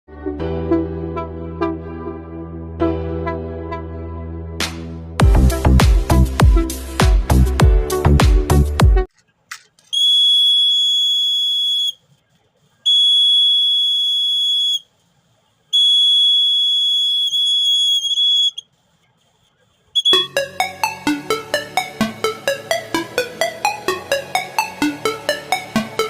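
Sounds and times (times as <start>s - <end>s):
piezo buzzer high-pitched tone: 20.0s - 20.7s.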